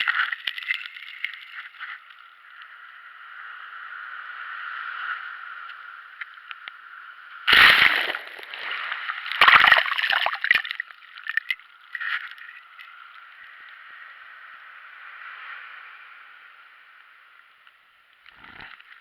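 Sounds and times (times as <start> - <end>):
loud water splashes: 7.5 - 11.4
sea water sloshing: 7.5 - 12.6.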